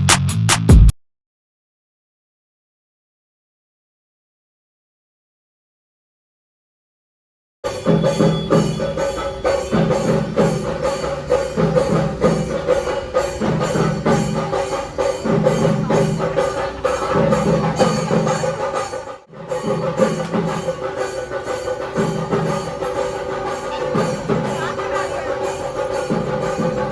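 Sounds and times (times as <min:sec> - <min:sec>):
music with percussive beat and bass: 0:00.0 - 0:00.9, 0:07.6 - 0:26.9.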